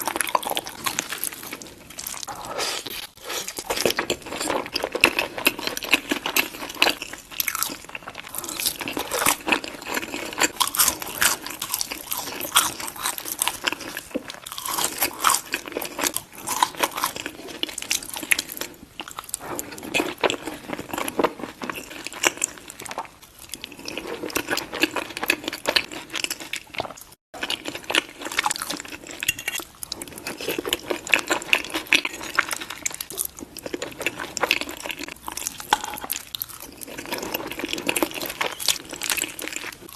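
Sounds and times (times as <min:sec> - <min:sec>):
chewing and crunching: 0:00.0 - 0:39.9.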